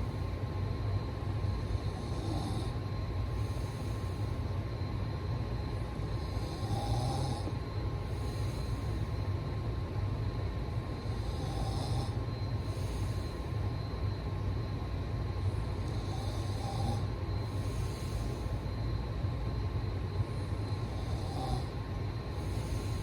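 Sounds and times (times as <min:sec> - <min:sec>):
person snoring: 0:06.2 - 0:07.6, 0:15.9 - 0:18.3, 0:20.8 - 0:21.8.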